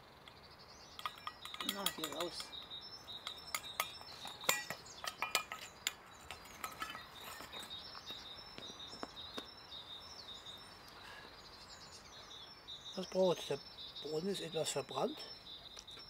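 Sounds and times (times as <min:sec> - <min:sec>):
high chirping: 0:00.0 - 0:16.0
metal pot clinking: 0:00.9 - 0:08.2.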